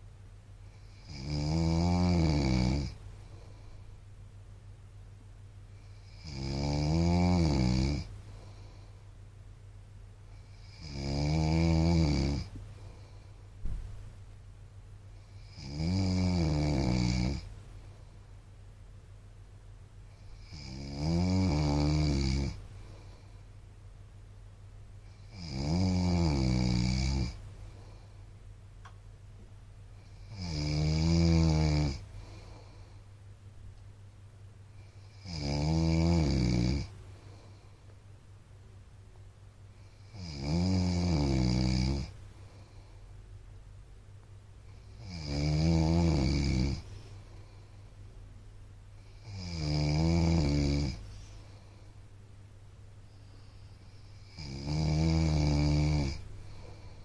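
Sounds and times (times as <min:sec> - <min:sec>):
faint low hum: 0:00.0 - 0:57.0
man snoring: 0:00.8 - 0:03.0, 0:05.9 - 0:08.2, 0:10.5 - 0:12.6, 0:15.3 - 0:17.5, 0:20.4 - 0:22.6, 0:25.1 - 0:27.4, 0:30.2 - 0:32.6, 0:34.8 - 0:36.9, 0:40.0 - 0:42.2, 0:44.9 - 0:47.0, 0:49.0 - 0:51.1, 0:53.9 - 0:57.0.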